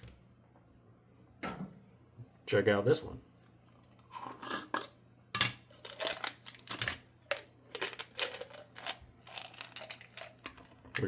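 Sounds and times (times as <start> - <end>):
metal parts clinking and rattling: 5.4 - 11.0.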